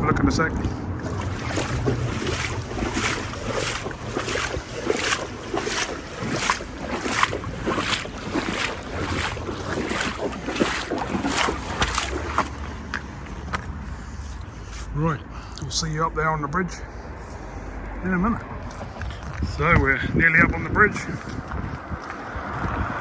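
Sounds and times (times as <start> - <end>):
wind buffeting microphone: 0.0 - 13.6, 18.7 - 23.0
footsteps walking: 1.0 - 14.9.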